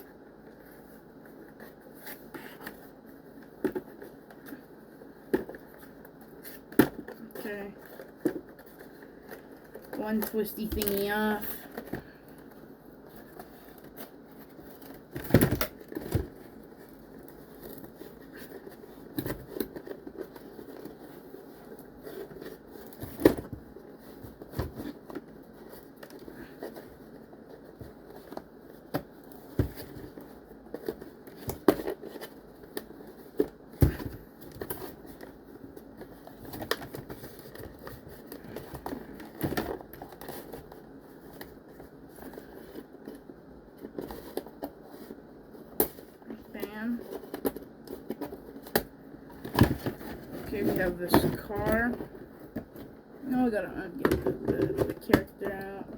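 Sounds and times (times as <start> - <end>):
plastic and card crinkling and tearing: 0.4 - 33.7.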